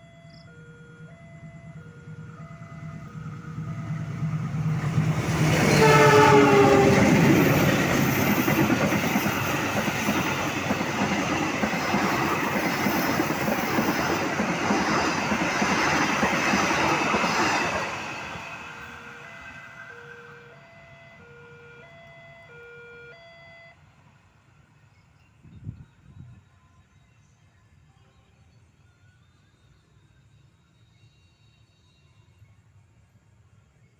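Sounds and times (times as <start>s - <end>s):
train horn: 0.0s - 8.4s
train rumble and clatter: 1.7s - 20.3s.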